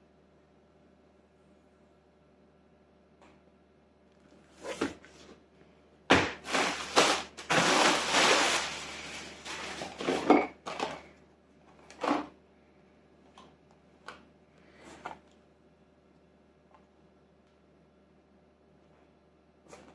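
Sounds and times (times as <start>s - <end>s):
packaging rustling: 6.2s - 11.0s.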